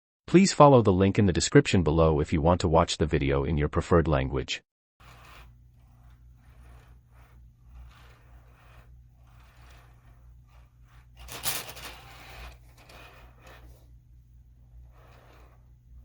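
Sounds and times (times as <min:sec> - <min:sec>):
faint scraping and rustling: 0:05.0 - 0:16.0
low electrical hum: 0:05.0 - 0:16.0.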